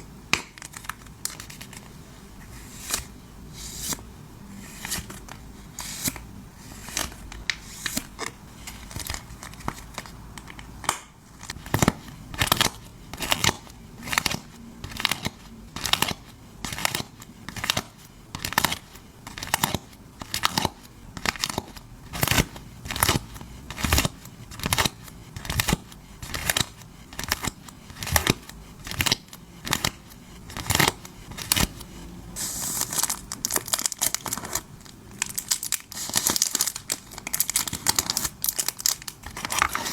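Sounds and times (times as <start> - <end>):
crinkling rustle: 32.4 - 39.9.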